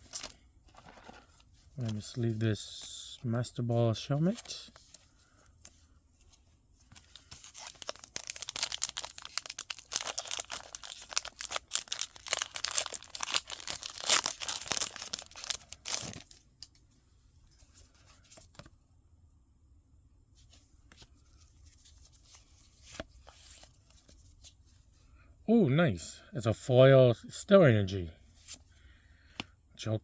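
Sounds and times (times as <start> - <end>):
foil wrapper tearing and crinkling: 7.1 - 16.4.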